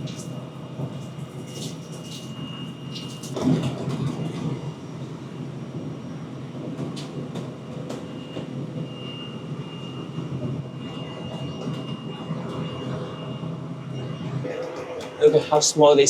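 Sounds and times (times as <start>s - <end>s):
ship engine drone: 11.9s - 16.0s.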